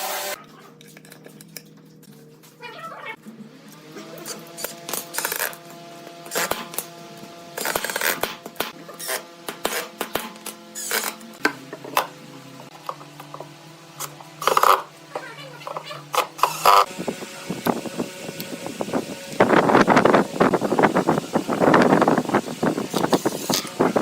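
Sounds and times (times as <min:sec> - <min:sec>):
tools clicking and clinking: 0:00.4 - 0:02.2.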